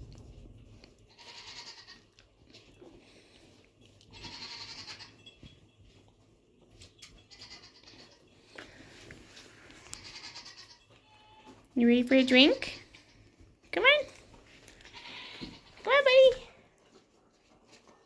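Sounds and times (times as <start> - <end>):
goats bleating: 1.1 - 2.1, 4.1 - 5.1, 10.0 - 11.6, 14.8 - 15.8.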